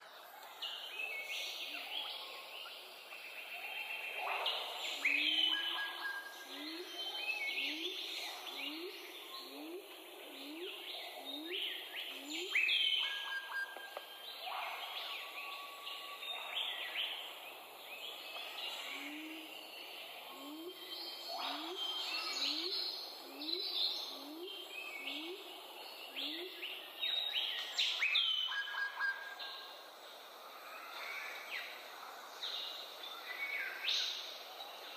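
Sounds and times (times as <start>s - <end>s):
birds calling and chirping: 0.0s - 34.9s
birds chirping and whistling: 4.2s - 9.8s, 26.2s - 29.6s.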